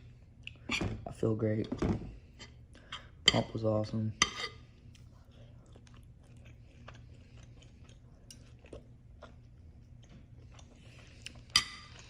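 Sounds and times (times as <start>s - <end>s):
low steady hum: 0.0s - 12.0s
person chewing food: 4.6s - 12.0s.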